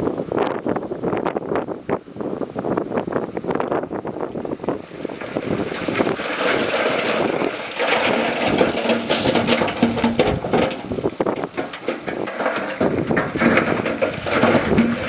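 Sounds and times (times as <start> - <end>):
bulldozer diesel engine running: 3.3 - 15.0
rocks and steel clattering: 4.2 - 15.0.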